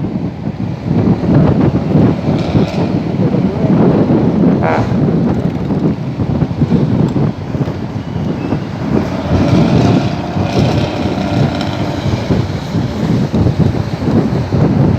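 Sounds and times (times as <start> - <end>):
loud exhaust rasping: 6.5 - 14.7.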